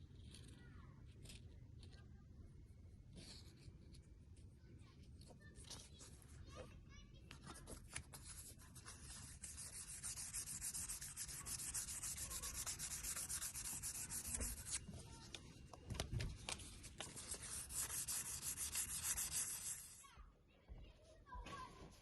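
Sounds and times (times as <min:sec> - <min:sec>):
sandpaper rubbing on wood: 0:08.3 - 0:14.8, 0:17.1 - 0:20.0.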